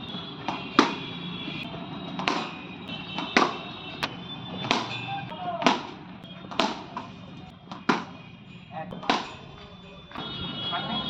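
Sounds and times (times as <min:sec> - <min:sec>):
cricket bat striking ball: 0:00.4 - 0:01.2, 0:02.0 - 0:08.2, 0:08.9 - 0:09.5.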